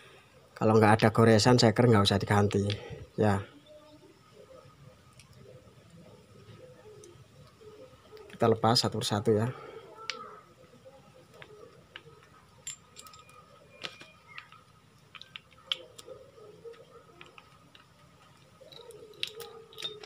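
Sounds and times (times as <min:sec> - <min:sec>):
small metal parts clicking: 0:11.3 - 0:20.0.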